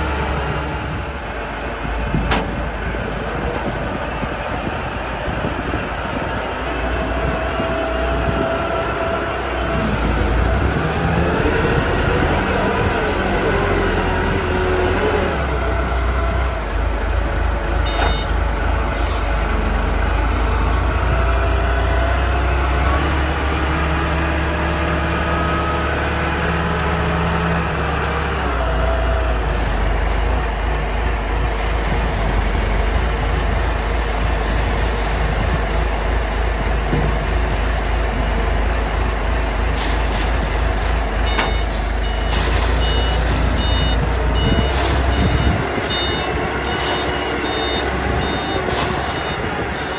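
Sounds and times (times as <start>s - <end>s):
diesel engine rumbling: 0.0s - 49.9s
reversing alarm beeping: 17.7s - 19.4s, 41.2s - 49.9s.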